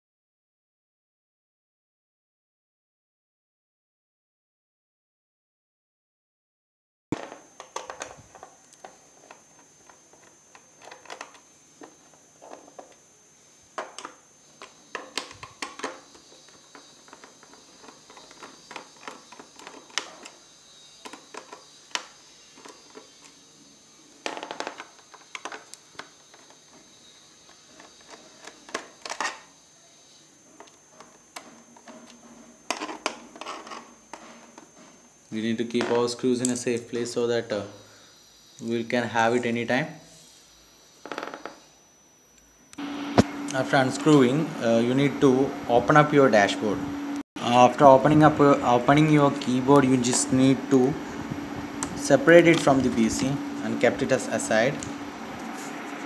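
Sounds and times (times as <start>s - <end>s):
screws being set down: 7.2s - 8.9s, 13.8s - 20.4s, 21.0s - 23.2s, 24.2s - 26.8s, 27.7s - 29.5s, 30.6s - 34.9s.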